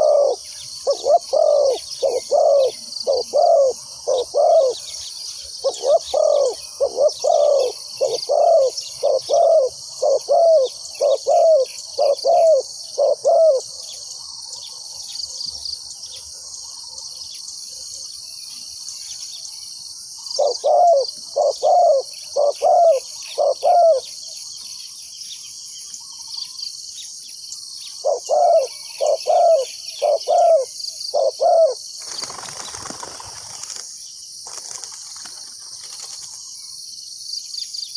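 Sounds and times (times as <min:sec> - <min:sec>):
doves cooing: 0:00.0 - 0:05.0, 0:05.6 - 0:13.8, 0:20.4 - 0:24.2, 0:28.0 - 0:33.8
insects droning: 0:00.0 - 0:37.9.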